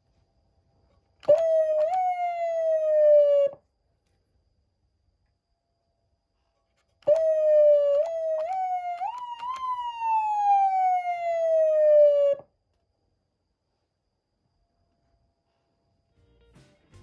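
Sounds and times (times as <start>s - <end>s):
electronic siren tone: 1.2s - 3.6s, 7.1s - 12.5s.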